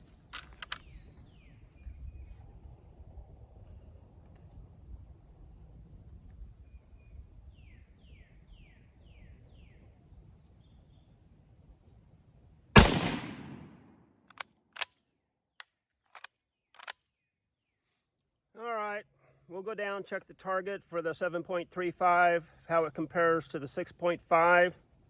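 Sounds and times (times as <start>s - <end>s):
rifle shot: 12.8s - 14.0s.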